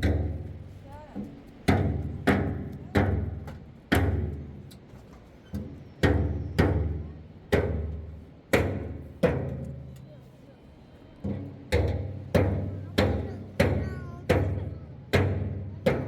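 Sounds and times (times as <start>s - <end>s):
heavy knocks on hollow object: 11.8s - 16.0s.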